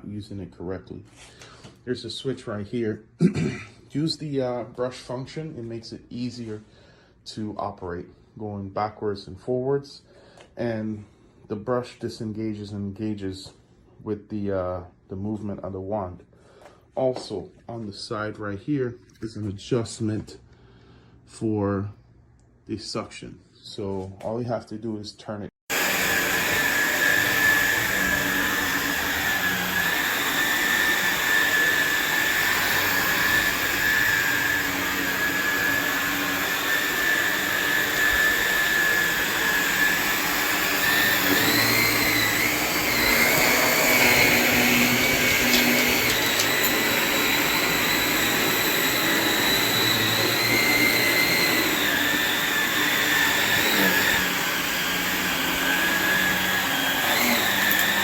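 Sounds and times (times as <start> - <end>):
vacuum cleaner running: 25.7 - 58.0.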